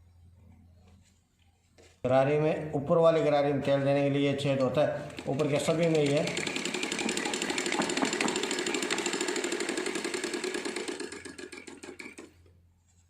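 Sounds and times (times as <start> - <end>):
sewing machine clattering: 4.4 - 12.4.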